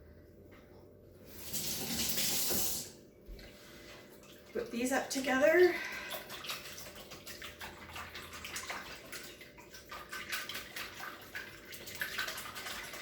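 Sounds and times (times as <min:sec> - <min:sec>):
liquid sloshing: 0:03.3 - 0:13.0.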